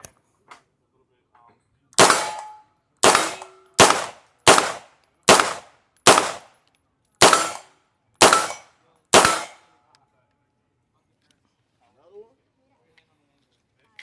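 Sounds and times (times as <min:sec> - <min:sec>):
gunshots with echo: 0:02.0 - 0:06.5, 0:07.2 - 0:08.6, 0:09.2 - 0:09.6.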